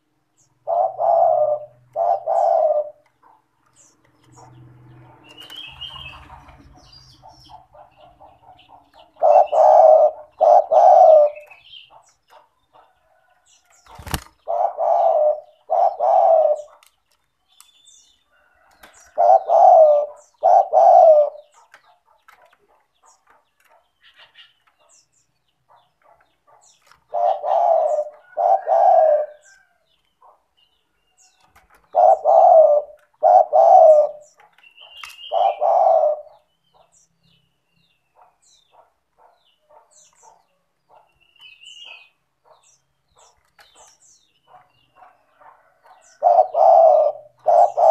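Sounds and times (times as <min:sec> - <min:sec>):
dove cooing: 0:00.0 - 0:04.6, 0:05.2 - 0:17.0, 0:18.4 - 0:23.4, 0:25.7 - 0:30.4, 0:31.4 - 0:36.9, 0:43.2 - 0:47.9.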